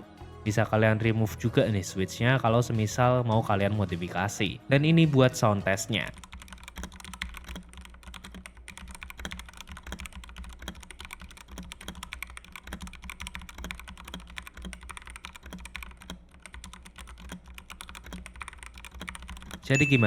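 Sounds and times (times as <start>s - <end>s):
mechanical keyboard typing: 5.8s - 20.0s.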